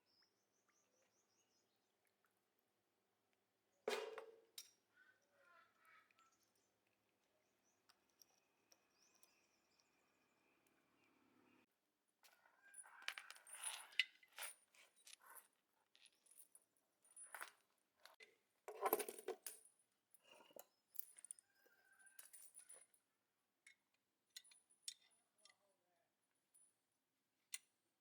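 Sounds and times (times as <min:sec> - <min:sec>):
metal tools clinking: 0:18.7 - 0:19.6.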